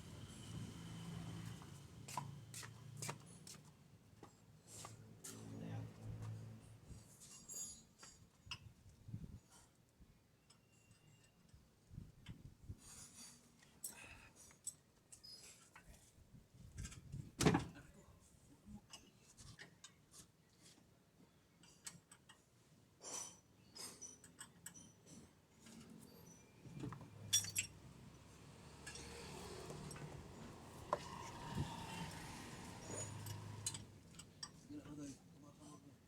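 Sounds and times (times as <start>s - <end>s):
metal tools clinking: 27.2s - 27.8s.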